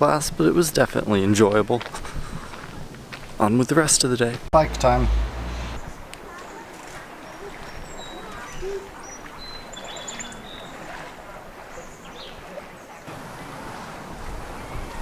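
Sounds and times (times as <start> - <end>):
steady rushing hiss: 4.5 - 5.8
small birds chirping: 7.2 - 10.8.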